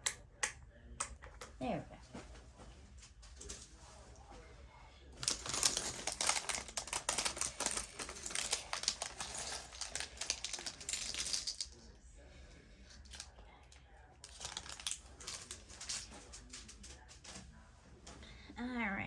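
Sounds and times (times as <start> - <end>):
cardboard rustling: 5.2 - 11.2
plastic bags crinkling: 5.2 - 11.8, 13.0 - 13.3, 14.2 - 16.7.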